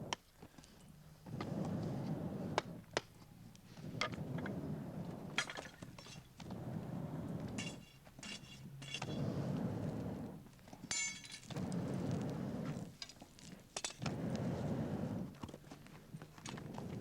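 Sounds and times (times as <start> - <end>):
metallic ringing clinks: 7.6 - 9.3, 10.8 - 11.5
tools breaking clay and charcoal: 10.9 - 11.6.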